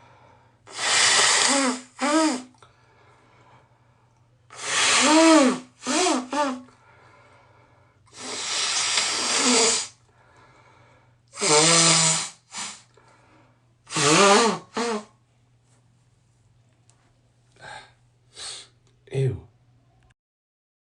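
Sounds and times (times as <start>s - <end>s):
nose blowing into tissue: 0.7s - 2.6s, 4.5s - 6.7s, 8.1s - 10.0s, 11.4s - 12.9s, 13.9s - 15.2s.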